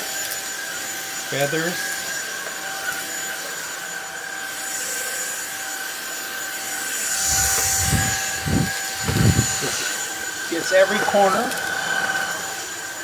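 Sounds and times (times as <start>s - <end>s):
vacuum cleaner motor whine: 0.0s - 13.0s
rushing air: 7.1s - 13.0s.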